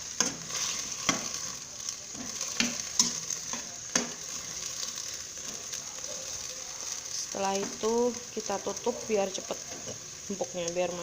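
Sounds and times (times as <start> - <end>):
spatula scraping a pan: 0.0 - 7.9
vegetables sizzling in a pan: 0.0 - 11.0.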